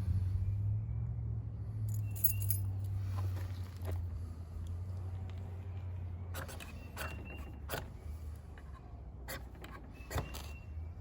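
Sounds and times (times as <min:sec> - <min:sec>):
faint metallic ring: 0:01.9 - 0:02.9.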